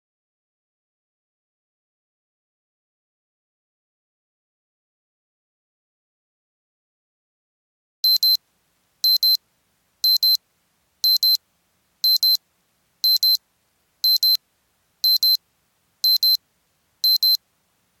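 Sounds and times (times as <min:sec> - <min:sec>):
alarm clock double beeps: 0:08.0 - 0:08.4, 0:09.1 - 0:09.4, 0:10.1 - 0:10.4, 0:11.0 - 0:11.4, 0:12.1 - 0:12.4, 0:13.1 - 0:13.4, 0:14.1 - 0:14.4, 0:15.0 - 0:15.4, 0:16.1 - 0:16.4, 0:17.0 - 0:17.4.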